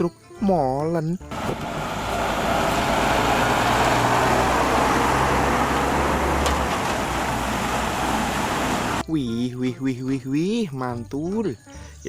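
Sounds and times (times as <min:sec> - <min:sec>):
broad rushing noise: 0:01.3 - 0:09.0
vehicle engine running: 0:01.3 - 0:09.0.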